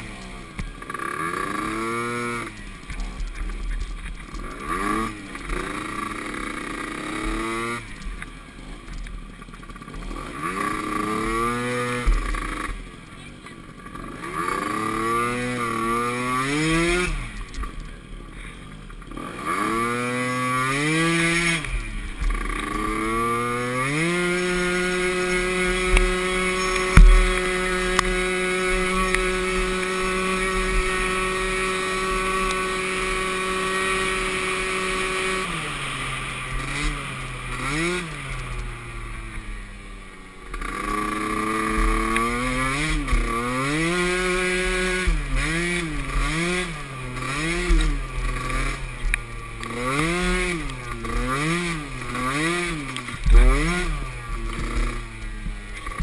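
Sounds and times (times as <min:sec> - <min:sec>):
small atv engine revving: 0:00.0 - 0:56.0
sharp thump: 0:26.8 - 0:28.1.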